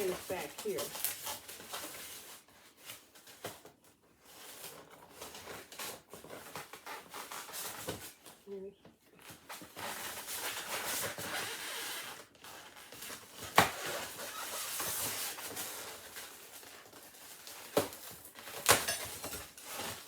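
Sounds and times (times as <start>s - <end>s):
packaging rustling and crackling: 0.0s - 8.4s, 9.2s - 20.0s.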